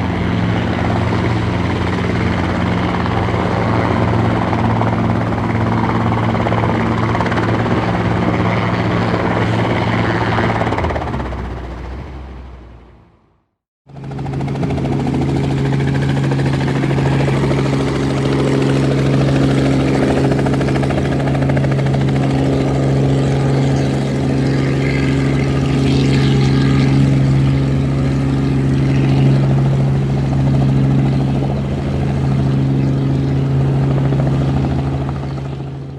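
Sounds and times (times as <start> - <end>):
helicopter rotor chopping: 0.0 - 13.2, 13.9 - 35.9.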